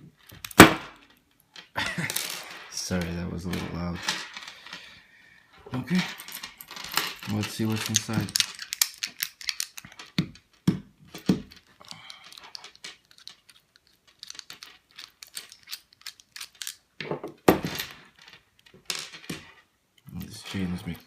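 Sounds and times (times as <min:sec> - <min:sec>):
padlock and chain clinking: 0:05.8 - 0:21.0.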